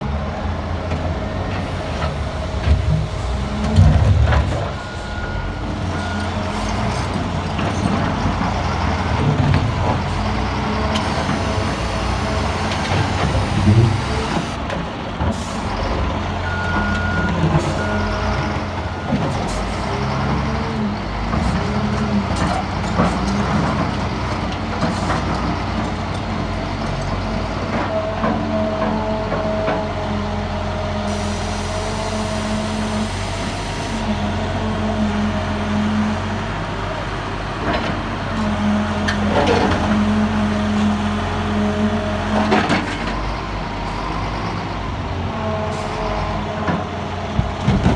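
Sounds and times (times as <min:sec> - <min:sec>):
diesel earth-moving machinery: 0:00.0 - 0:47.9
truck running: 0:00.0 - 0:47.9
reversing beeps: 0:04.7 - 0:06.7, 0:16.4 - 0:19.2.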